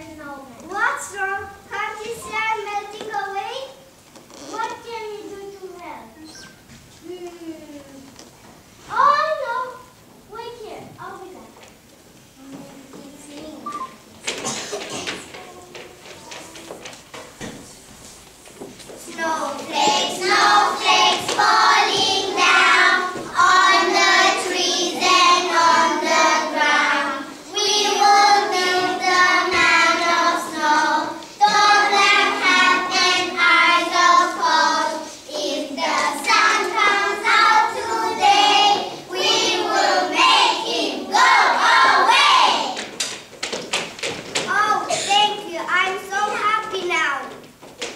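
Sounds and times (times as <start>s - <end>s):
children's choir singing: 19.0s - 42.9s.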